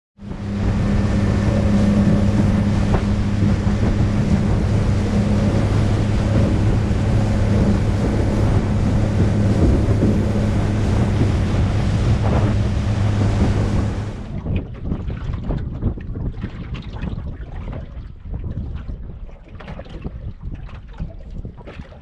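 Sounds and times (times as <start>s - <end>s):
outboard motor running: 0.2s - 16.6s
water noise: 0.2s - 22.0s
wind on microphone: 0.2s - 22.0s.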